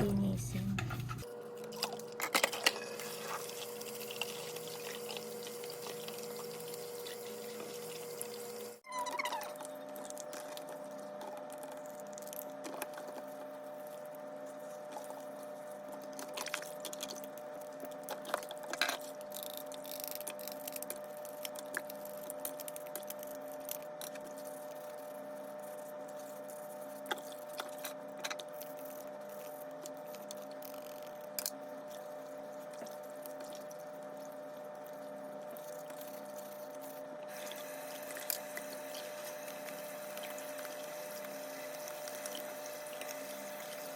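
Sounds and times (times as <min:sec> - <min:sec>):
water running: 0:00.0 - 0:01.2, 0:03.0 - 0:08.8
constant hum: 0:00.0 - 0:02.8.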